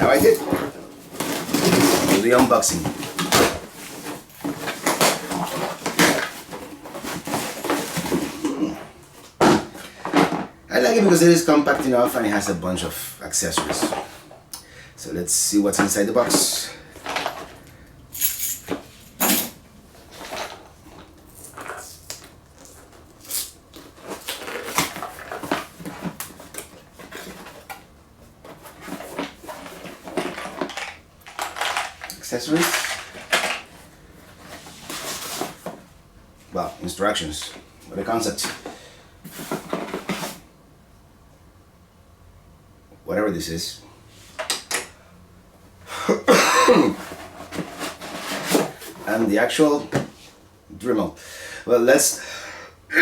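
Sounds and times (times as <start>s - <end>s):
box packaging rustling and knocking: 0.0s - 12.2s, 18.5s - 35.9s, 38.4s - 40.4s, 46.4s - 50.3s
small hard pieces clattering: 30.0s - 33.7s.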